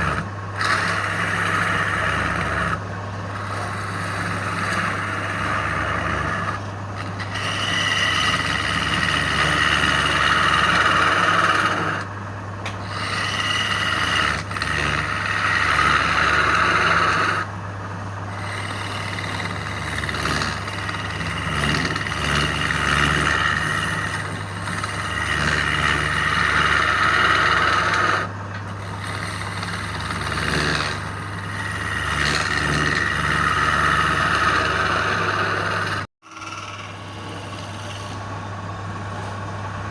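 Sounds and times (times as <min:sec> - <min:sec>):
tool rasping against spinning wood: 0:00.0 - 0:17.5, 0:18.3 - 0:38.4
wood lathe motor hum: 0:00.0 - 0:39.9.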